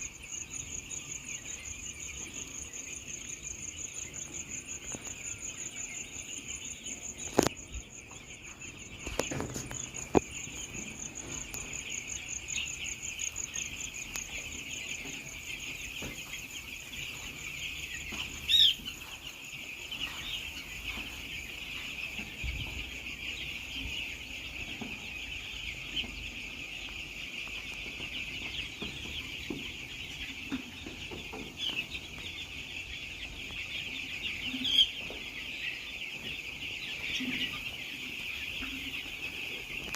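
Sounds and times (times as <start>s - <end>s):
chicks peeping: 0.0s - 39.9s.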